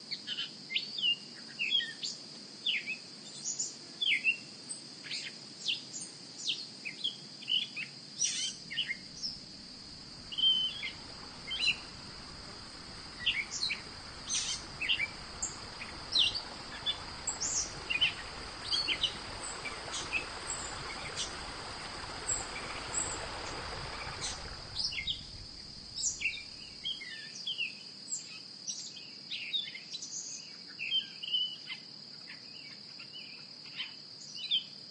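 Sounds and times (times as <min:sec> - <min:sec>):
birds chirping: 0:08.8 - 0:27.0
low rushing noise: 0:09.1 - 0:26.9
high-pitched insect drone: 0:09.2 - 0:26.9.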